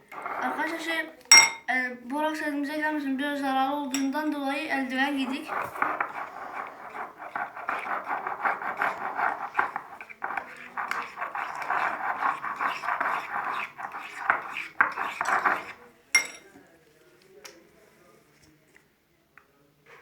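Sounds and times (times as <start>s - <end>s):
spoon scraping against a bowl: 0.0s - 1.6s, 4.9s - 16.5s.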